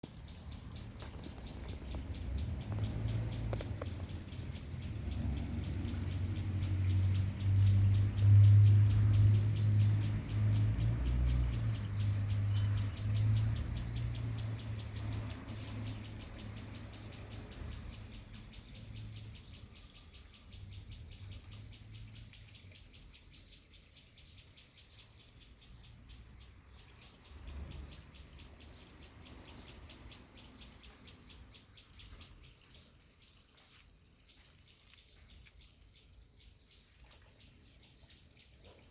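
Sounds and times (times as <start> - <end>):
birds chirping: 0.0 - 38.9.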